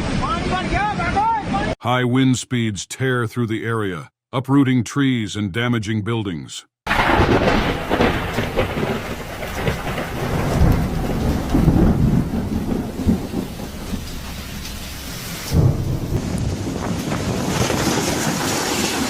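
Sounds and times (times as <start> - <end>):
heavy rain: 0.0 - 1.8, 6.9 - 19.0
low rumble of thunder: 6.9 - 19.0.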